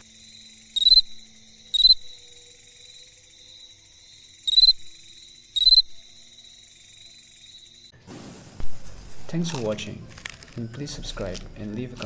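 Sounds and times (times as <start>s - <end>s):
cricket chirping: 0.0s - 8.0s.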